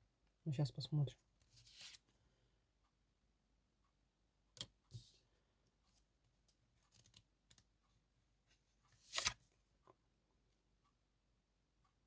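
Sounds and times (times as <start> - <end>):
card sliding: 9.0 - 9.4
cards being handled: 9.0 - 9.4.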